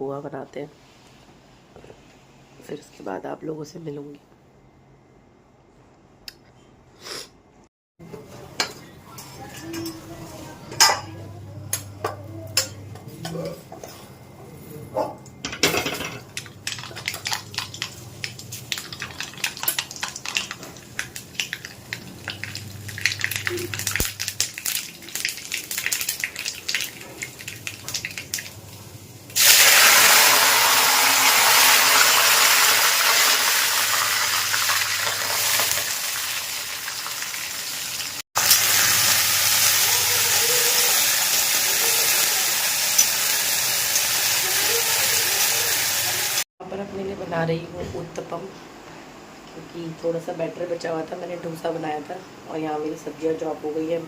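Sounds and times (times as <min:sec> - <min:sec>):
food sizzling in hot oil: 0:15.8 - 0:46.5.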